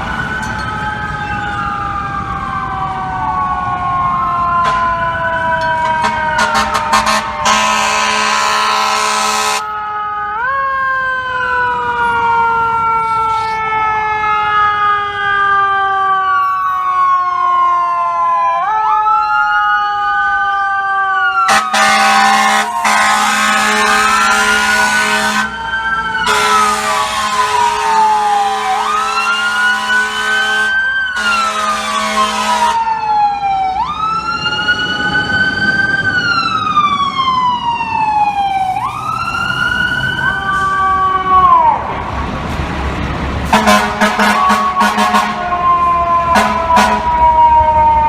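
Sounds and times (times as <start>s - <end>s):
air horn blasts: 6.0s - 9.7s, 21.4s - 25.6s, 26.2s - 32.8s, 43.5s - 45.4s, 46.3s - 47.2s.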